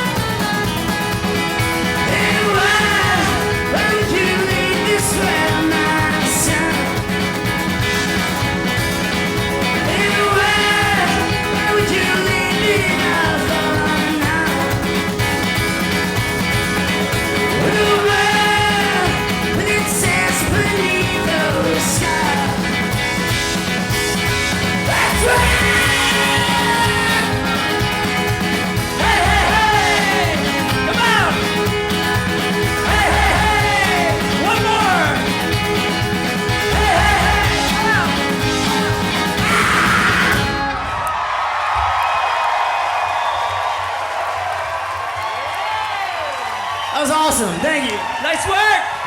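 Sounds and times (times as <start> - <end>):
live rock band playing: 0.0 - 41.2
strummed guitars: 0.0 - 42.3
person singing lead vocal: 1.8 - 8.0, 9.6 - 15.5, 17.4 - 23.6, 24.6 - 40.7.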